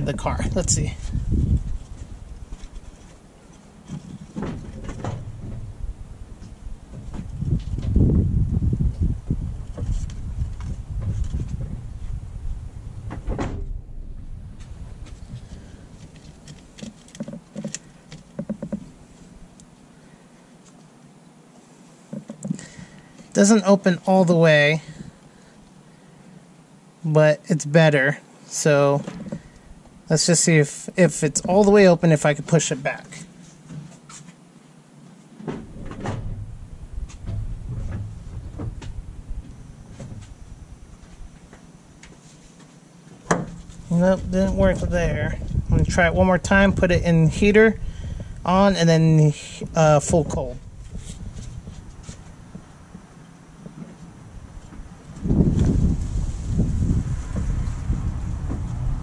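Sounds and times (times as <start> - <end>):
low rumble: 4.6 - 16.2, 35.6 - 41.4
thump: 13.1 - 13.9, 35.4 - 36.5, 43.3 - 43.6.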